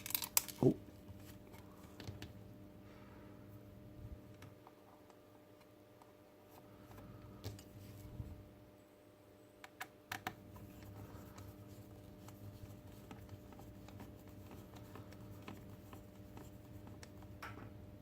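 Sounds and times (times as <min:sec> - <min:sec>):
plastic parts clicking: 0:00.0 - 0:00.8
faint steady hum: 0:00.0 - 0:18.0.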